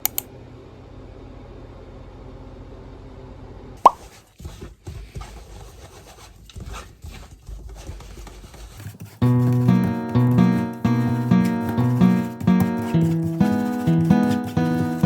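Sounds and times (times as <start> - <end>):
sharp falling plop: 3.8 - 4.0.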